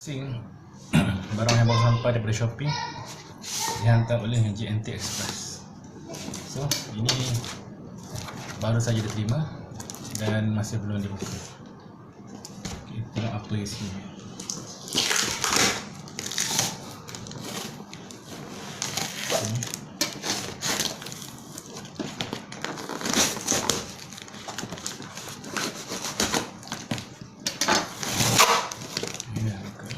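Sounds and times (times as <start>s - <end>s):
packaging crinkling and tearing: 6.3s - 10.4s, 14.3s - 29.9s.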